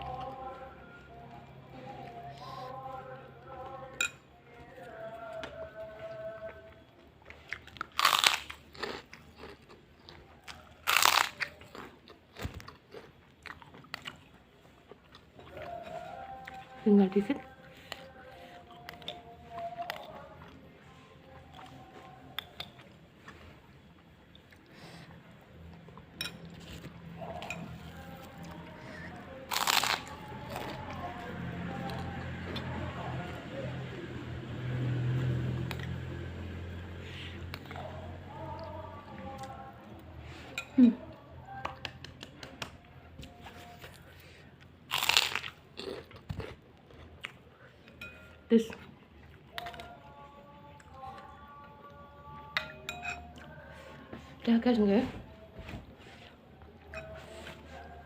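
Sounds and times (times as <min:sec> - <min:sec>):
crunchy food chewing: 0:04.6 - 0:32.8, 0:41.6 - 0:48.0
crunchy bite of food: 0:07.5 - 0:09.9, 0:10.5 - 0:14.3, 0:29.5 - 0:30.8, 0:44.9 - 0:47.4.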